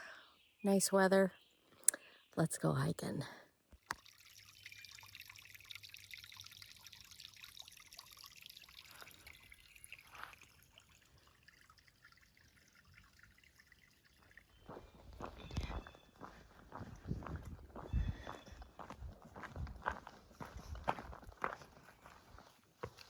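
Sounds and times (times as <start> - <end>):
faint trickling water: 0.7 - 18.8
footsteps on a trail: 14.6 - 23.0.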